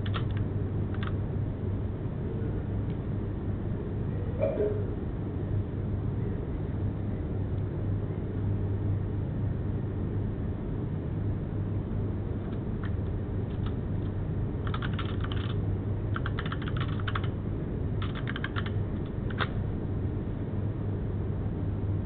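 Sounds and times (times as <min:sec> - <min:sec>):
low hum: 0:00.0 - 0:10.6.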